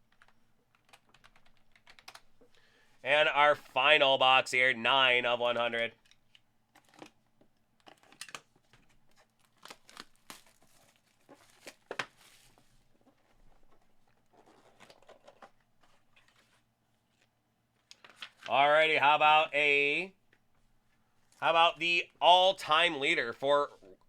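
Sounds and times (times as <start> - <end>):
packaging tearing and crinkling: 9.1 - 12.4.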